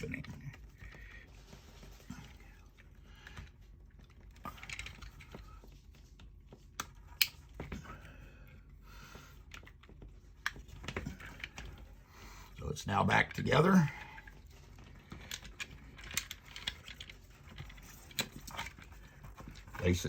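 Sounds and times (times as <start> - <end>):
plastic pieces clicking together: 15.1 - 18.9.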